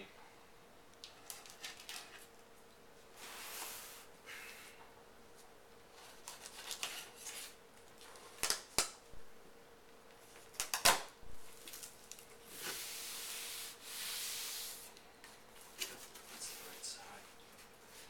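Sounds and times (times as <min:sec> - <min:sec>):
cardboard and foam rustling: 0:15.6 - 0:18.0.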